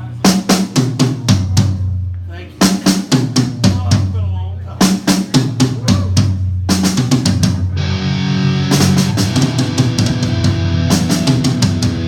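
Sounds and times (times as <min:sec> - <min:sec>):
drum hits: 0:00.3 - 0:12.0
bass guitar: 0:05.6 - 0:12.0
distorted electric guitar: 0:07.7 - 0:12.0.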